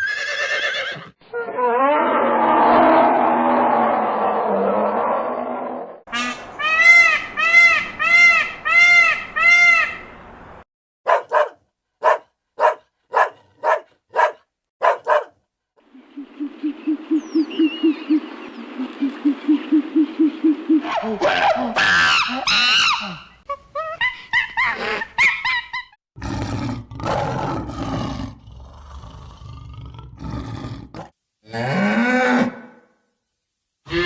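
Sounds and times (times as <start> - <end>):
rising and falling animal calls: 0.0 - 10.0, 15.9 - 24.1.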